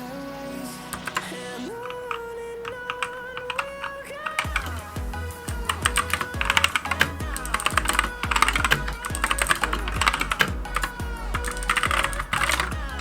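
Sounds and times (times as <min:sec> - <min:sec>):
rapid keyboard typing: 0:00.9 - 0:13.0
electronic music with bass line: 0:04.4 - 0:13.0.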